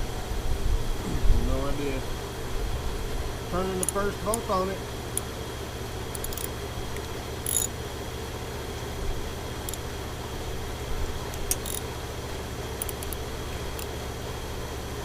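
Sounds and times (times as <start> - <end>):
steady low hum: 0.0 - 15.0
metallic clinks of hand tools: 7.5 - 7.7, 11.4 - 11.8, 12.8 - 13.2.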